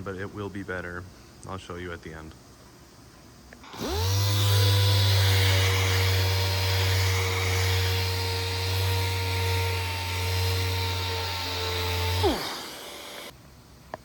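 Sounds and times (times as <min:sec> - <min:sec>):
electric motor running: 0:03.6 - 0:13.3.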